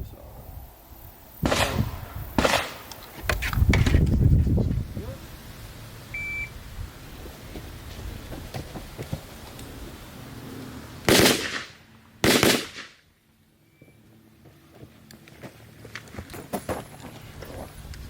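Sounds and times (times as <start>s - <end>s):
loud gunshots with echo: 1.4s - 2.8s, 11.1s - 13.0s.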